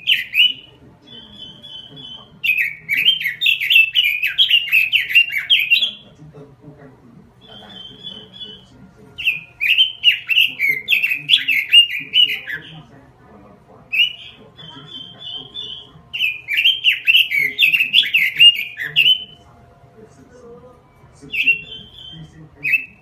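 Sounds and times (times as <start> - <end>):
bird repeated notes: 0.0 - 6.2, 7.2 - 13.0, 13.8 - 19.7, 20.8 - 23.0
bird warbling song: 0.0 - 19.5, 21.0 - 23.0.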